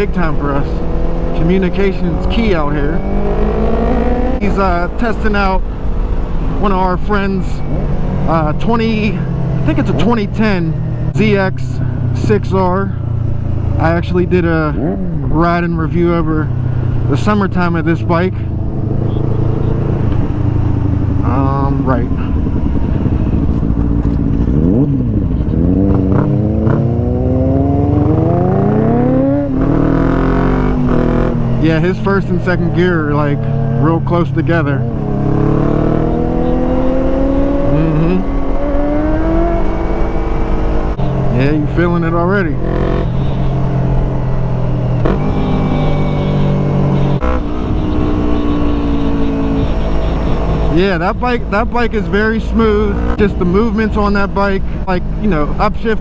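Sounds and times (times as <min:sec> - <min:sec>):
motorcycle engine accelerating: 0:00.0 - 0:55.9
wind rumble: 0:17.8 - 0:33.8.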